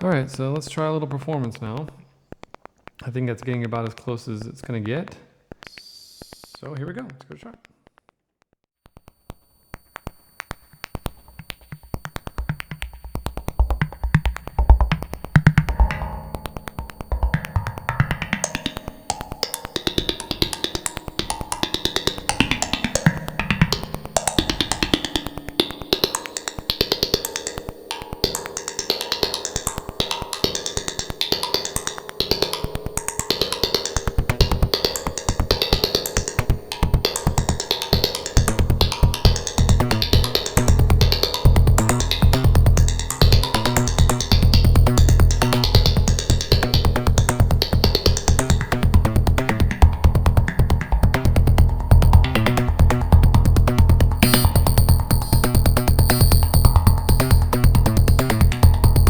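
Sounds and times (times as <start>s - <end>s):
synthesizer electro beat: 10.9s - 26.7s, 33.4s - 59.0s.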